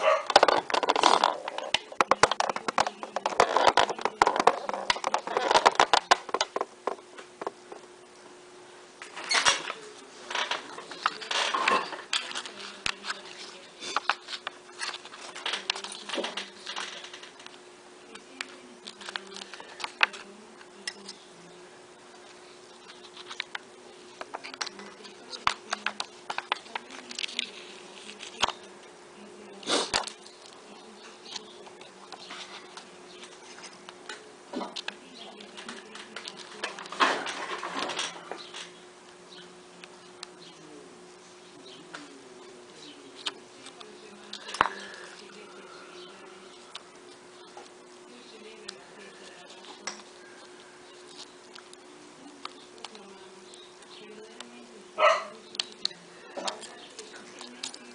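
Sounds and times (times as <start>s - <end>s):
steady low hum: 0.0s - 57.9s.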